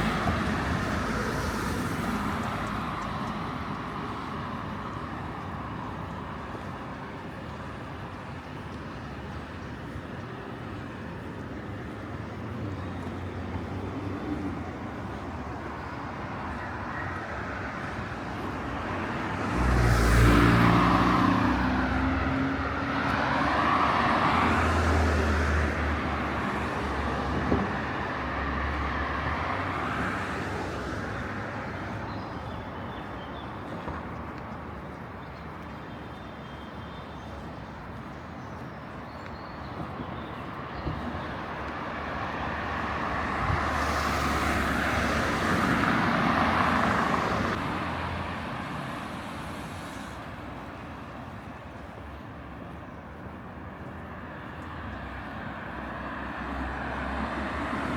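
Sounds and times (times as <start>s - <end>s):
cars passing: 0.0s - 4.9s, 12.4s - 33.2s, 39.8s - 57.9s.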